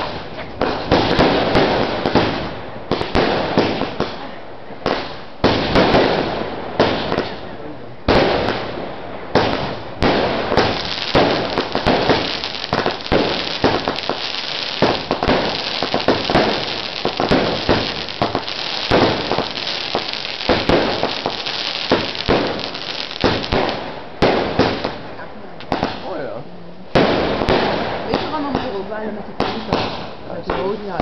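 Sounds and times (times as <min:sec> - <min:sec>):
firework bangs: 0:00.0 - 0:26.2, 0:26.9 - 0:31.0
firework crackling: 0:00.0 - 0:26.2, 0:26.9 - 0:31.0.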